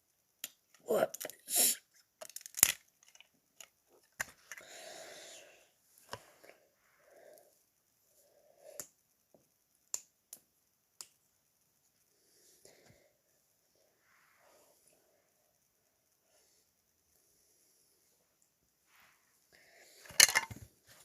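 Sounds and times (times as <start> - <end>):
plastic bricks clicking: 2.2 - 4.6, 20.1 - 20.6
soft rustle: 16.4 - 21.0.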